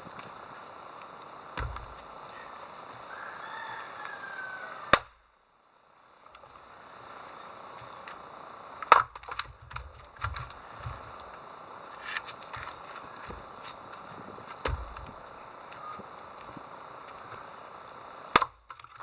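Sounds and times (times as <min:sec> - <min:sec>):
sharp knocks: 0:01.6 - 0:02.0
faint falling whistle-like call: 0:02.3 - 0:05.0.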